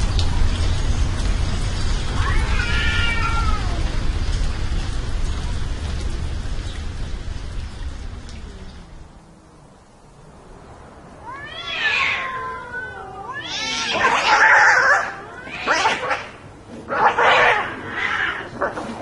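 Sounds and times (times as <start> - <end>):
cats screeching: 2.1 - 3.9, 11.2 - 18.8
cat yowling: 2.2 - 3.9, 11.2 - 18.6.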